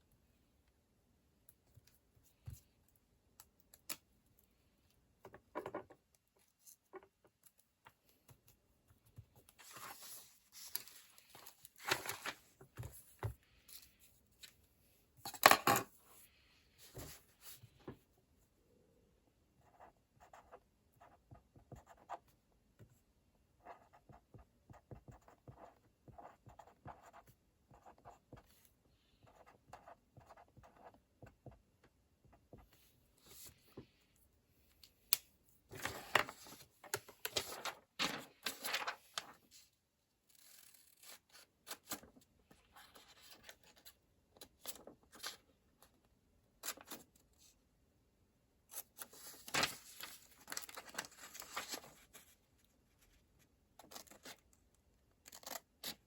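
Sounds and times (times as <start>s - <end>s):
paper rustling: 9.5s - 13.2s, 35.7s - 39.6s, 49.0s - 52.4s.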